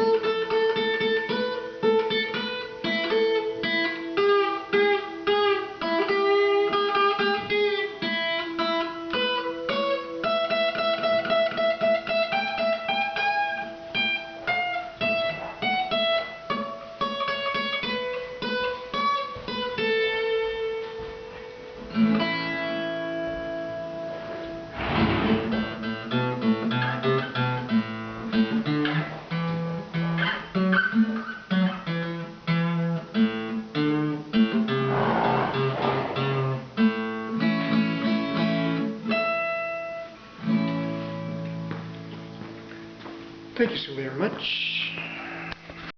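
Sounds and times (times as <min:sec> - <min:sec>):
acoustic guitar playing: 0:00.0 - 0:43.6.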